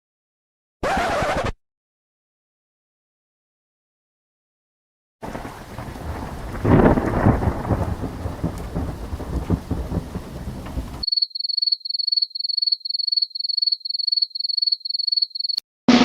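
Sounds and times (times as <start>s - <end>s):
steady rain: 5.2s - 11.0s
thunder rumble: 5.2s - 11.0s.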